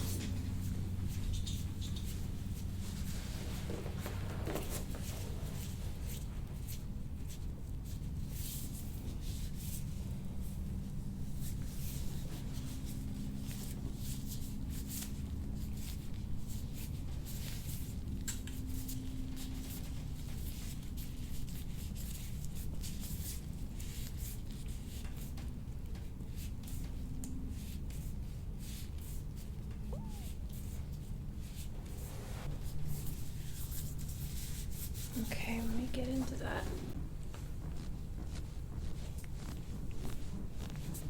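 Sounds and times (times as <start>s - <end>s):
steady low hum: 0.0s - 41.0s
hands brushing over skin: 31.5s - 41.0s.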